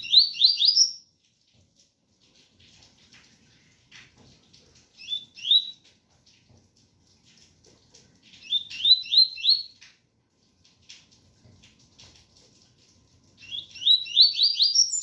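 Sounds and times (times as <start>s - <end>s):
bird singing whistled notes: 0.0s - 1.0s, 5.0s - 5.8s, 8.4s - 9.8s, 13.4s - 15.0s.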